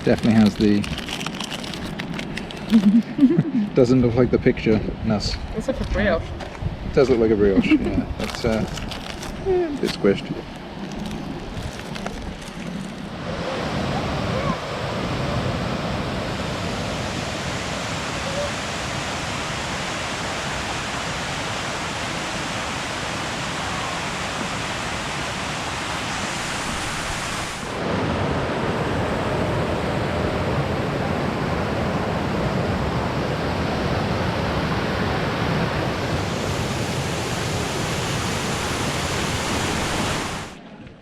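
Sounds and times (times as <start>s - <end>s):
rush of falling water: 13.2s - 40.6s.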